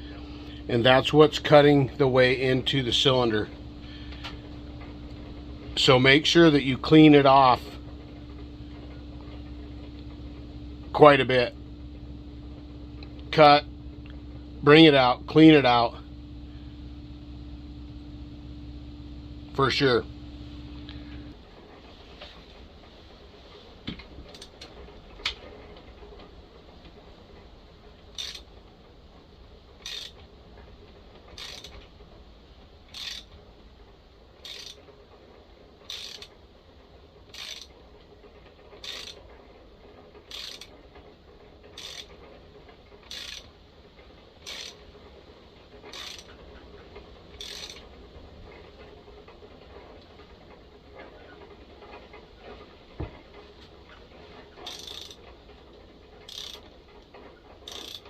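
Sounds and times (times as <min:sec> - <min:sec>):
thread repair tool clicking: 0:43.1 - 0:43.4, 0:54.7 - 0:55.2, 0:56.3 - 0:56.6, 0:57.7 - 0:58.0.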